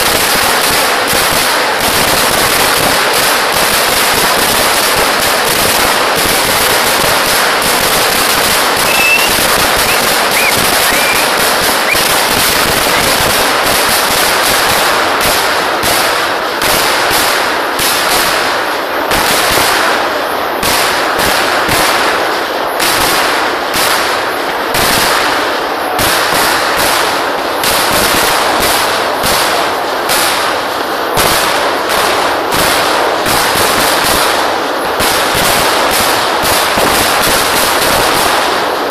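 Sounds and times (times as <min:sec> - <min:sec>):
firecracker bangs rattling: 0:00.0 - 0:38.9.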